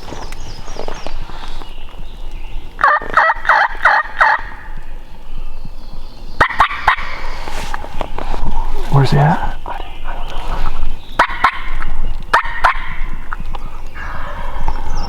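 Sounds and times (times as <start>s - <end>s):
turkey gobbling: 2.8s - 4.7s, 6.4s - 7.4s, 11.2s - 13.3s.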